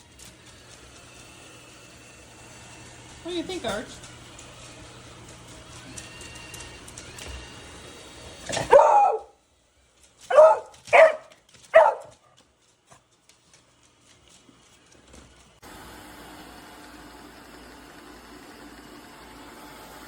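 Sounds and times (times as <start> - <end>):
dog barking: 8.5 - 9.4, 10.3 - 12.2.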